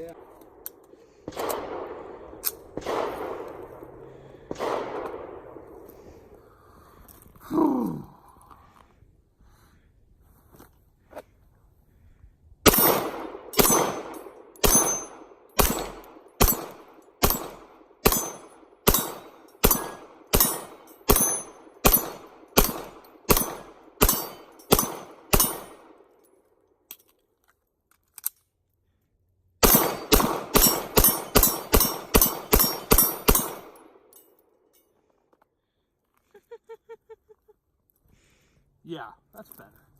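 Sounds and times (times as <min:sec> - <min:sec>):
pistol shots: 0:00.1 - 0:05.8, 0:12.6 - 0:26.0, 0:29.6 - 0:34.1.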